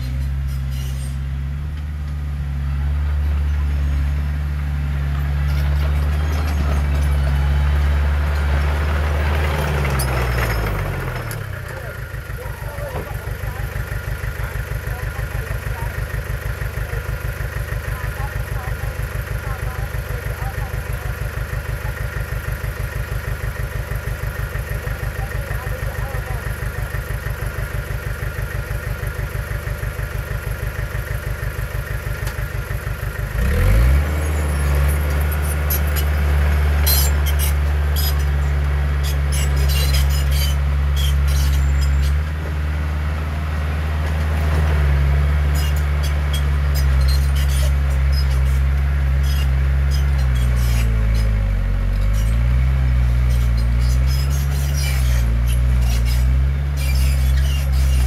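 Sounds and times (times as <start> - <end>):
heavy diesel engine revving: 0.0 - 58.0
machinery clanks and clatter: 5.0 - 42.6, 43.9 - 58.0.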